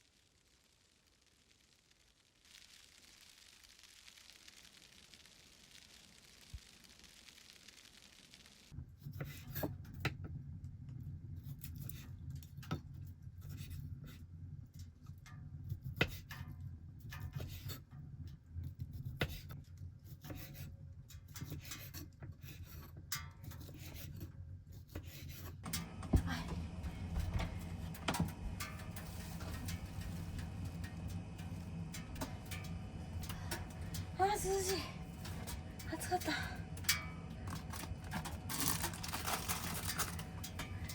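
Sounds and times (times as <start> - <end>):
low steady hum: 25.5 - 40.9
utensils clicking and tapping: 25.6 - 40.9.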